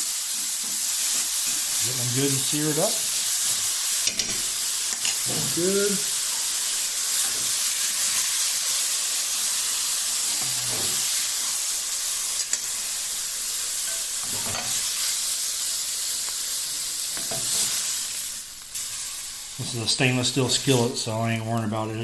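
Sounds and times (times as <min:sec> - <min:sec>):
steak sizzling in a skillet: 0:00.0 - 0:22.0
scraping in the pan: 0:10.3 - 0:11.3.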